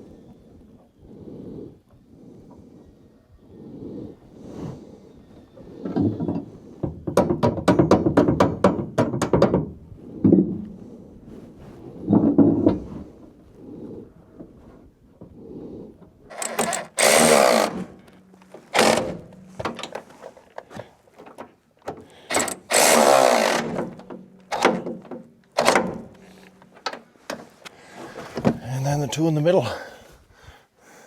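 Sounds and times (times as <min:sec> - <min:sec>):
knocks and clunks: 0:05.8 - 0:10.7, 0:12.0 - 0:13.1, 0:16.0 - 0:28.6
power drill bursts: 0:16.3 - 0:20.0, 0:22.2 - 0:25.0, 0:25.6 - 0:26.4.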